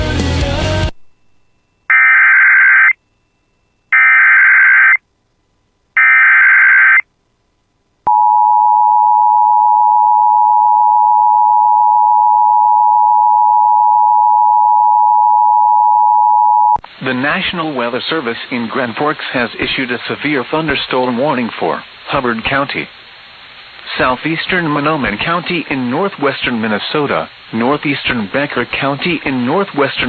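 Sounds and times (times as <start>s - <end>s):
data header squawks: 1.9s - 3.0s, 3.9s - 5.0s, 6.0s - 7.0s.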